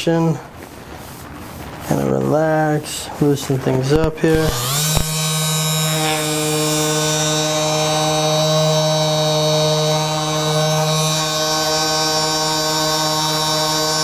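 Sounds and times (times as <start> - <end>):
vibration massager buzzing: 3.9 - 14.0.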